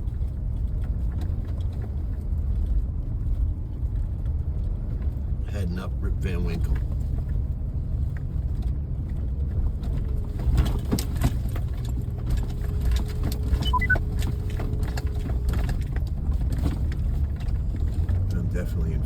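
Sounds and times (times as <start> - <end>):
truck engine and tyre rumble: 0.0 - 19.0.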